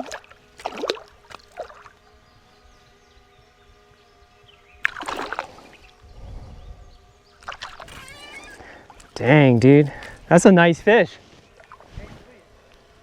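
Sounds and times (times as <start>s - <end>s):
water splashing: 0.0s - 2.0s, 4.8s - 5.9s, 7.4s - 9.2s, 11.6s - 11.9s
faint steady hum: 0.0s - 13.0s.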